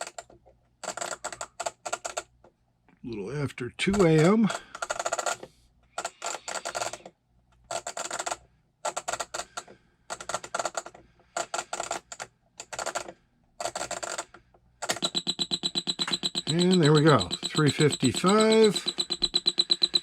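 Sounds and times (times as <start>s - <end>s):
alarm buzzing: 15.0s - 20.0s.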